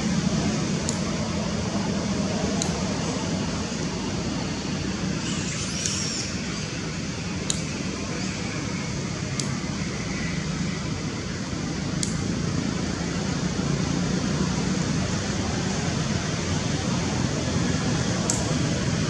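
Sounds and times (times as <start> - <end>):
steady rushing noise: 0.0 - 19.0
faint high clicks: 5.5 - 6.3.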